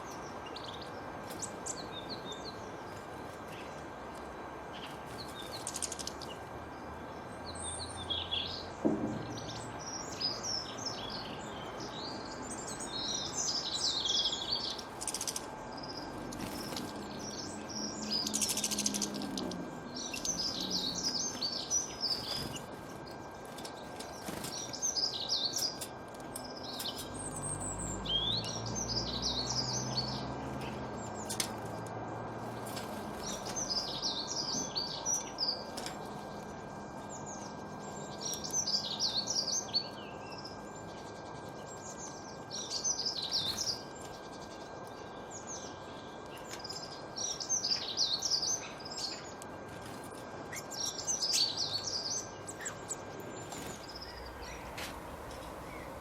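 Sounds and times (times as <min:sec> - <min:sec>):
outdoor hiss: 0:53.4 - 0:56.0
songbird warbling: 0:53.7 - 0:56.0.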